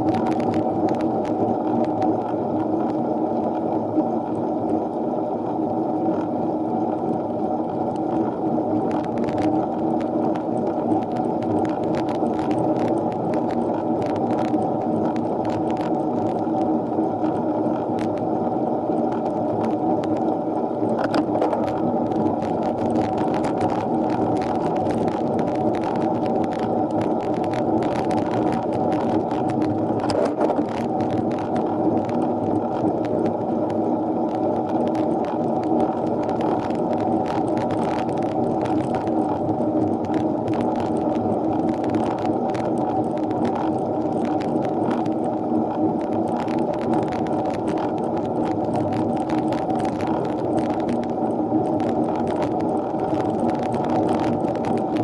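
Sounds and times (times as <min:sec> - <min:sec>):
muffled wind and road noise: 0:00.0 - 0:55.0.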